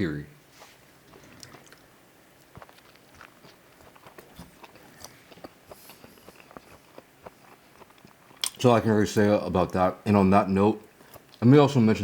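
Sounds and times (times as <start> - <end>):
person chewing food: 0.5 - 9.0, 10.8 - 11.4.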